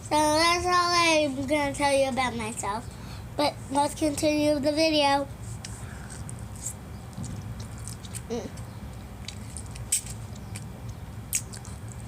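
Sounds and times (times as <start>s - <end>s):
steady low background hum: 0.0s - 12.0s
eating clicks and smacks: 7.1s - 12.0s.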